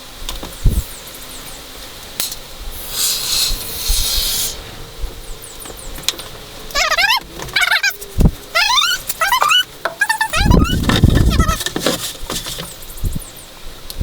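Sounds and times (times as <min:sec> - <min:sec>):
spray paint can hissing: 0:02.8 - 0:04.6
rising squeaky chirps: 0:03.0 - 0:11.6.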